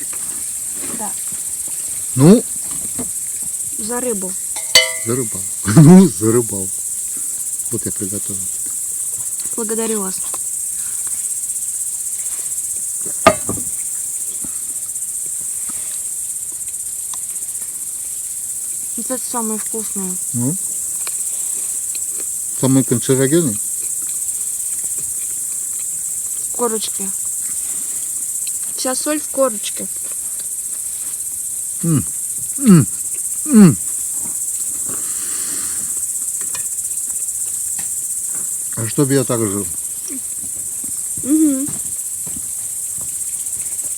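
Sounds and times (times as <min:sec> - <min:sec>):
crickets chirring: 0:00.0 - 0:43.9
sharp knock: 0:04.6 - 0:05.4, 0:13.2 - 0:13.7.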